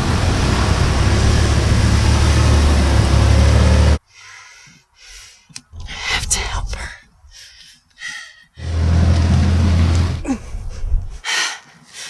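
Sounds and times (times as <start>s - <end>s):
car engine running loud: 0.0s - 4.0s, 8.6s - 10.3s
road noise: 0.0s - 4.0s, 8.6s - 11.0s.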